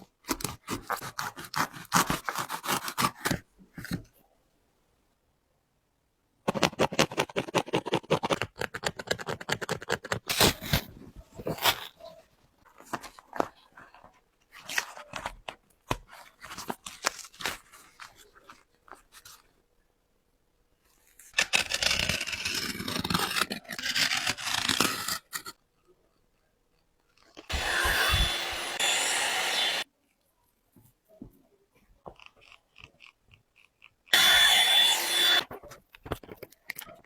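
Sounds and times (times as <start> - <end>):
harsh rasp: 27.5 - 29.8, 34.1 - 35.4.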